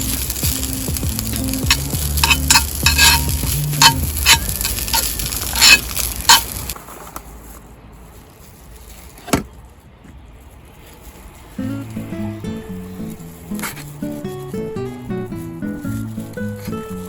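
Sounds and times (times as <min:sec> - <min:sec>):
food sizzling in a frying pan: 0:00.0 - 0:06.8
utensil clinks and scrapes: 0:00.0 - 0:09.4, 0:10.8 - 0:17.0.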